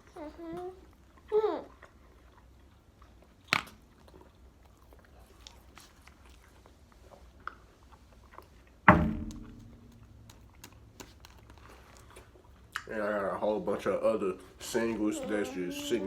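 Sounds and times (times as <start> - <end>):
chewing and crunching: 0.0 - 8.8, 9.9 - 13.0
ringing knock: 8.9 - 10.0.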